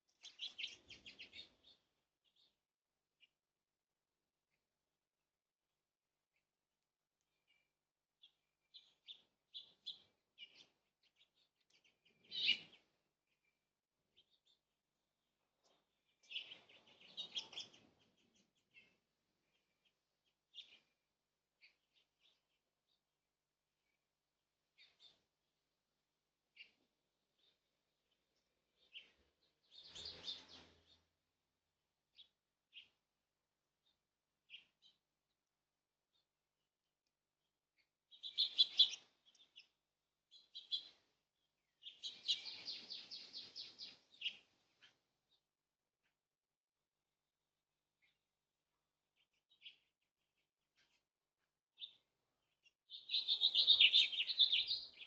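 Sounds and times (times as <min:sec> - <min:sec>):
small birds chirping: 0:00.0 - 0:55.0
bird calling: 0:53.0 - 0:55.0.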